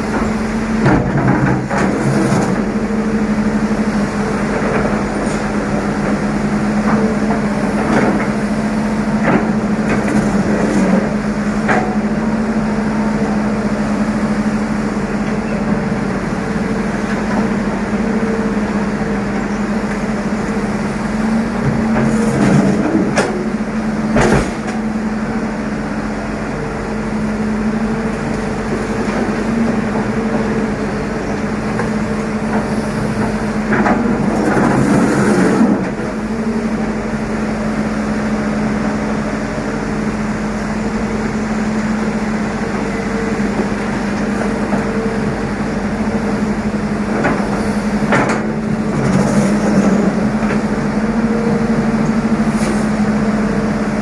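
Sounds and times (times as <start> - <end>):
diesel engine droning: 0.0 - 54.0.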